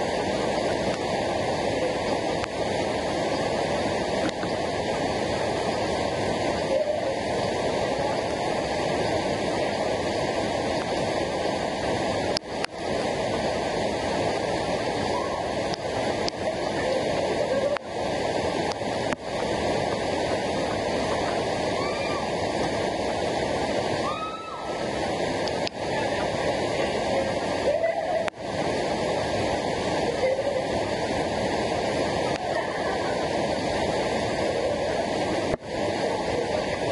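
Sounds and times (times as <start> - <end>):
waterfall water rushing: 0.0 - 36.9.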